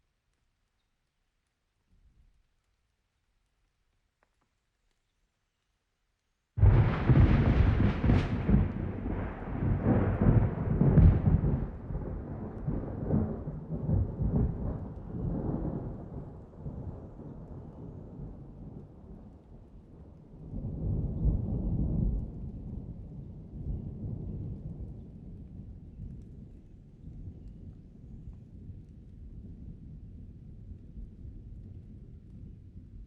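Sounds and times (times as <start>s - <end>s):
thunder rolling with cracks: 6.6s - 19.0s
soft thunder rumble: 6.6s - 33.0s.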